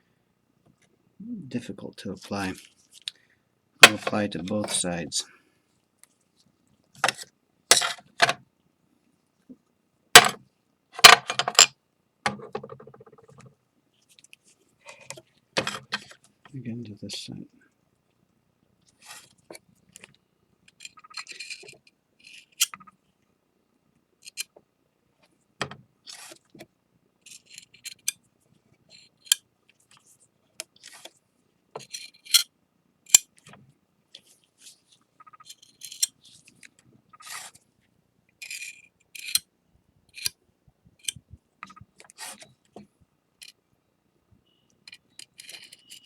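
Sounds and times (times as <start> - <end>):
palette knife scraping ceramic: 37.2 - 37.6.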